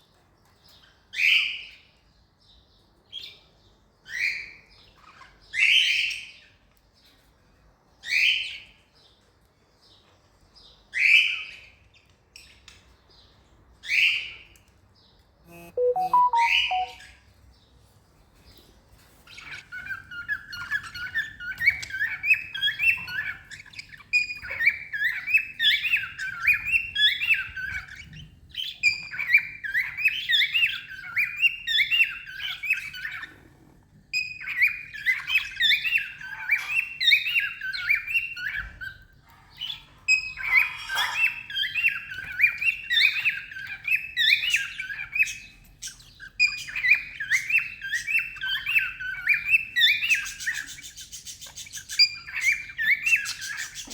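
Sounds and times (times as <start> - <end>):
cockatiels chirping and whistling: 15.7 - 17.0, 19.3 - 33.4, 34.1 - 53.9.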